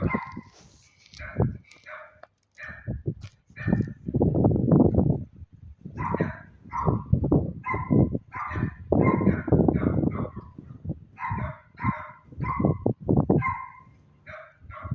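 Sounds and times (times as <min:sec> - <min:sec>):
small dogs barking: 0:00.0 - 0:00.6, 0:01.2 - 0:03.0, 0:03.6 - 0:04.0, 0:06.0 - 0:14.9.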